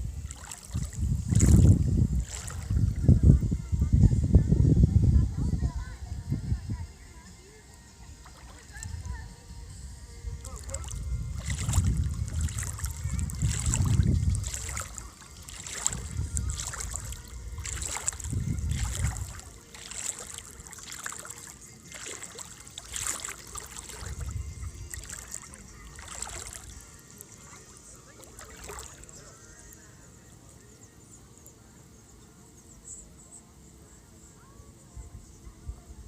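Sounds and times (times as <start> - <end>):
water splashing and sloshing: 0.0 - 3.2, 8.1 - 9.1, 10.4 - 29.8
wind buffeting microphone: 0.0 - 7.0, 8.6 - 26.9.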